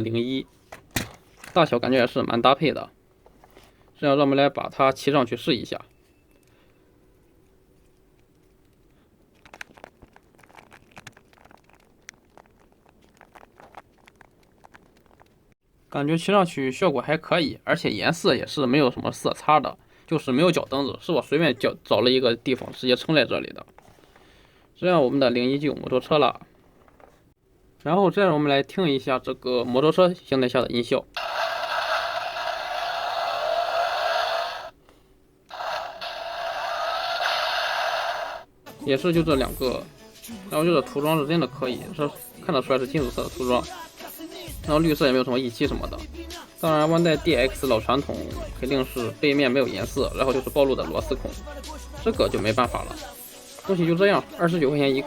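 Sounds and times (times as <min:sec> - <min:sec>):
hard plastic clicks and rustling: 0:00.6 - 0:01.7, 0:07.8 - 0:15.4.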